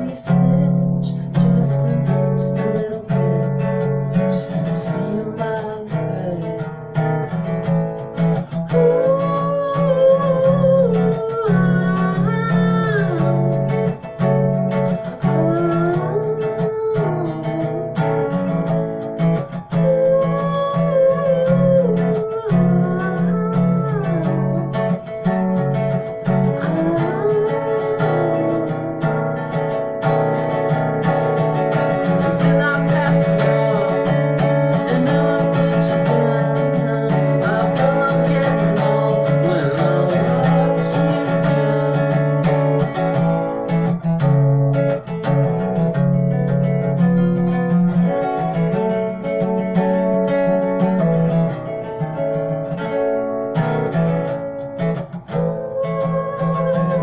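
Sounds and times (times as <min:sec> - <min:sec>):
plucked acoustic guitar music: 0:00.0 - 0:57.0.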